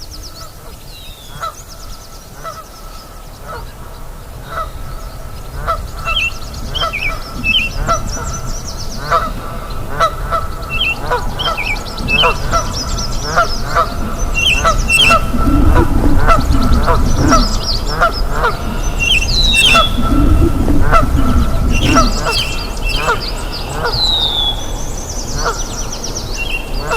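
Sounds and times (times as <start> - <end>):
birds chirping and trilling: 10.5 - 26.9
frogs honking calls: 14.3 - 15.9, 18.4 - 24.9.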